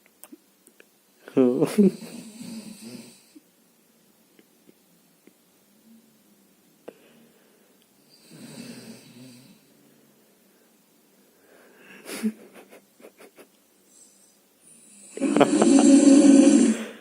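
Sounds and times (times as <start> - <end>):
person snoring: 1.8 - 3.4, 8.1 - 9.7, 13.9 - 17.0.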